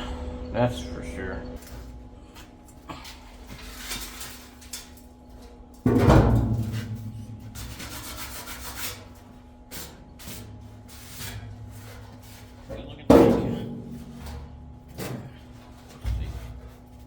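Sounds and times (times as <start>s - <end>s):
faint steady hum: 0.0s - 17.0s
rubbing and scraping: 6.4s - 12.9s.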